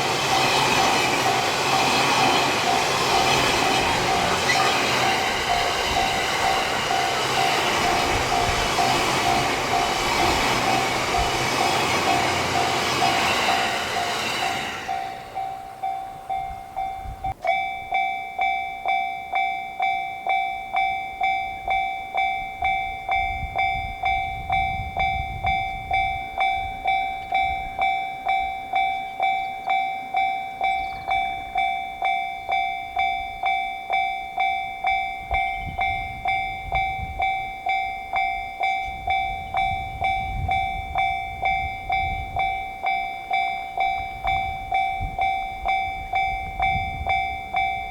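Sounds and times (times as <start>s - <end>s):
railroad crossing signal ringing: 0.0s - 47.9s.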